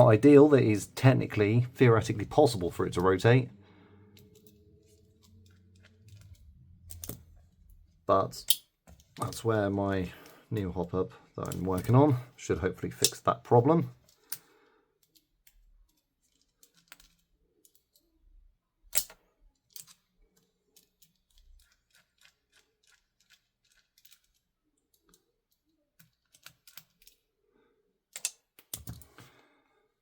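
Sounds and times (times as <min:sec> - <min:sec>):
rifle parts clicking: 0:04.2 - 0:07.3, 0:12.9 - 0:13.3, 0:18.9 - 0:27.2, 0:28.1 - 0:29.2.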